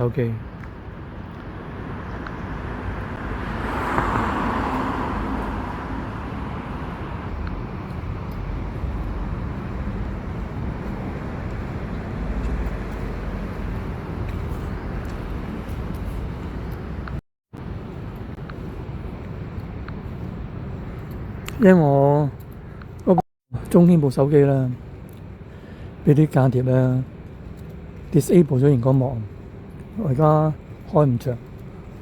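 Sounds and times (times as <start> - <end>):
road traffic noise: 0.0 - 32.0
vehicle passing: 1.1 - 16.6.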